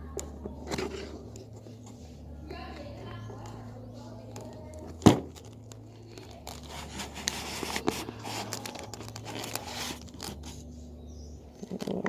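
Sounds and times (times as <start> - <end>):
plastic packaging crinkling: 4.3 - 10.7.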